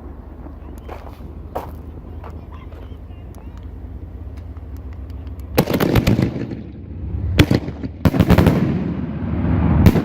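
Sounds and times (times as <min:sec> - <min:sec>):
fireworks bursting: 0:05.4 - 0:10.0.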